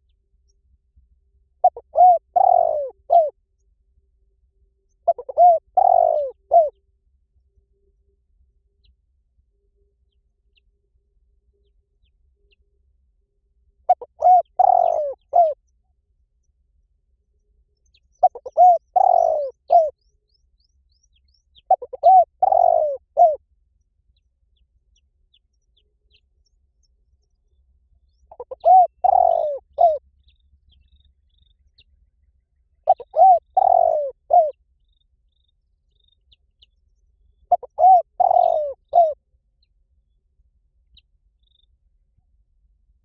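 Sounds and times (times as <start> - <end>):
dove cooing: 1.6 - 3.4, 5.0 - 6.7, 13.9 - 15.6, 18.2 - 20.0, 21.7 - 23.4, 28.3 - 30.0, 32.8 - 34.6, 37.5 - 39.2.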